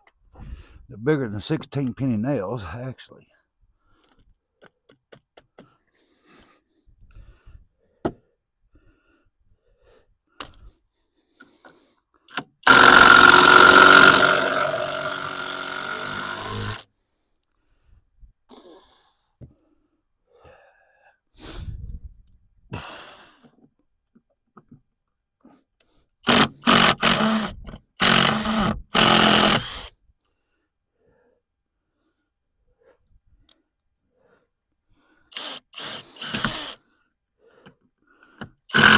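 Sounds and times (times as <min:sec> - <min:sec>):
power drill driving screws into wood: 0:12.3 - 0:16.9, 0:26.2 - 0:29.9, 0:35.3 - 0:36.8, 0:38.4 - 0:38.9.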